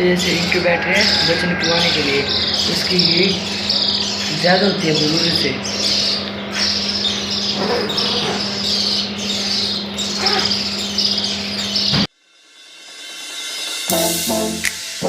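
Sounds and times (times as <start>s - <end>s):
low hum: 0.0s - 12.0s
chicks peeping: 0.0s - 12.1s.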